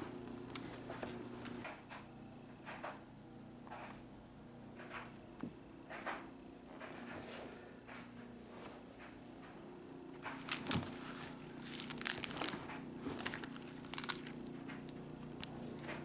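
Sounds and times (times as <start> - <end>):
faint steady hum: 0.0 - 16.0
crinkly material rustling: 10.2 - 16.0.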